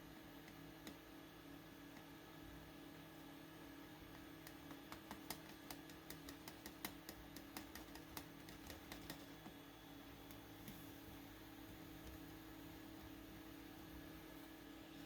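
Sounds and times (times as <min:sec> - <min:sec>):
low steady hum: 0:00.0 - 0:15.0
small irregular clicks: 0:00.4 - 0:01.0, 0:04.0 - 0:09.6.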